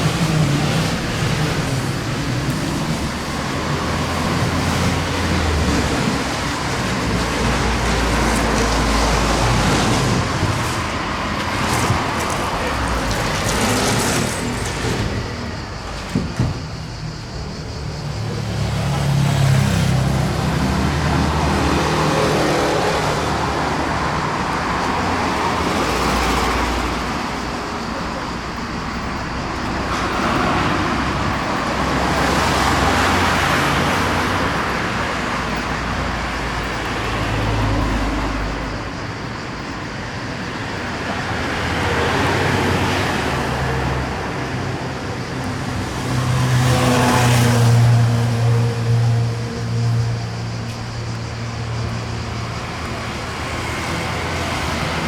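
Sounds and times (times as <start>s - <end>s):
vehicles passing by: 0.0s - 55.0s.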